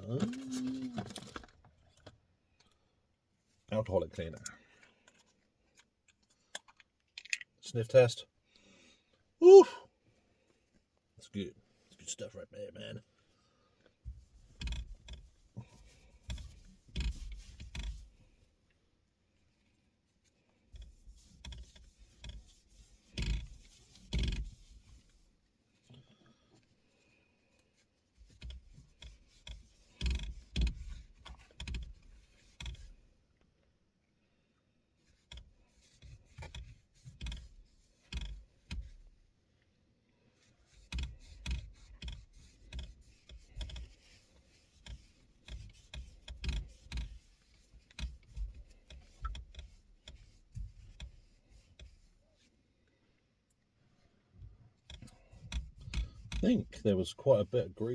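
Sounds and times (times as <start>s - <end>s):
hand rubbing steering wheel: 0.0s - 2.0s, 9.4s - 9.8s, 14.0s - 33.4s, 35.0s - 39.7s, 40.4s - 52.6s, 53.8s - 57.9s.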